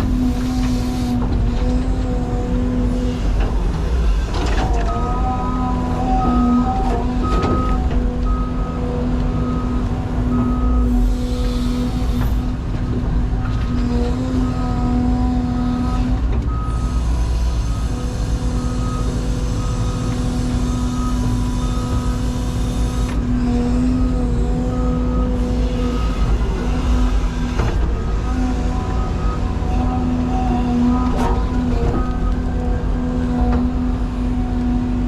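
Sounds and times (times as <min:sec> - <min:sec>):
excavator diesel engine and hydraulics: 0:00.0 - 0:35.0
backup alarm beeping: 0:06.2 - 0:11.0.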